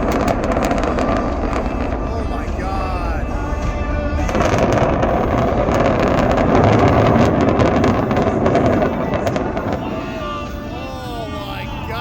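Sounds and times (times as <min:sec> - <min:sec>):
heavy rumble of collapsing building: 0:00.0 - 0:10.5
sharp cracking blasts: 0:00.0 - 0:12.0.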